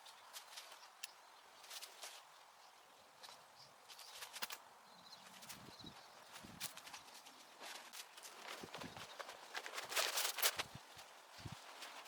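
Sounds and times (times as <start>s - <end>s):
soft footsteps: 5.2s - 12.0s.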